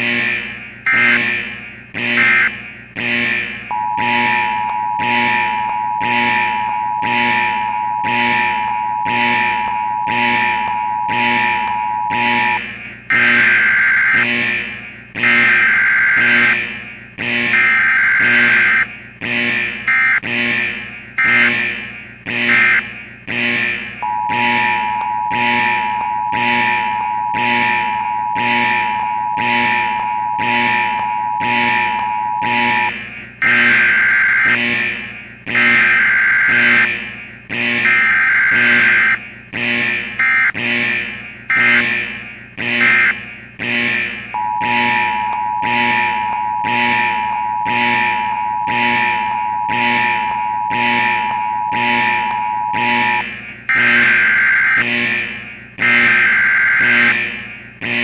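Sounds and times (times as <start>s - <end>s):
harsh buzzing alarm blasts: 0.0s - 58.0s
high continuous tone: 3.6s - 14.2s, 23.9s - 34.5s, 44.2s - 54.8s
steady high beep: 3.7s - 12.6s, 24.0s - 32.9s, 44.4s - 53.2s.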